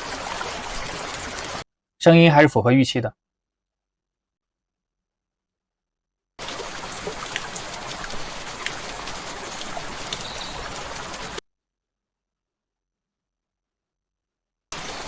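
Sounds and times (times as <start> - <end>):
rain patter: 0.0 - 1.6, 6.4 - 11.4, 14.8 - 15.0.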